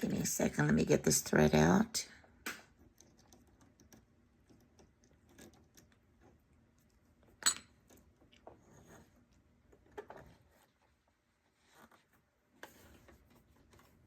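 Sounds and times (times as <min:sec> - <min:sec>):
small clicks and taps: 0:02.4 - 0:08.5.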